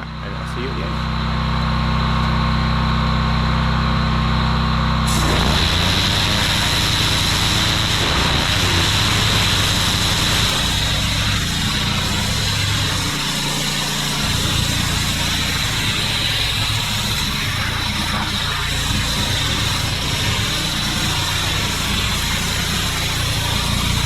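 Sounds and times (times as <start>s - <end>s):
pressure washer engine running: 0.0s - 24.0s
water jet spraying onto driveway: 5.1s - 24.0s.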